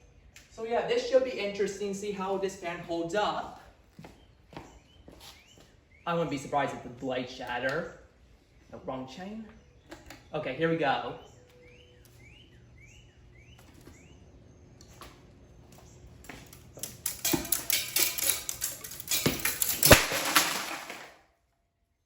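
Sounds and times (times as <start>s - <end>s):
ceiling fan squeaking: 9.4s - 20.0s
fan clattering and banging: 16.2s - 21.2s
heavy crash: 19.2s - 21.1s.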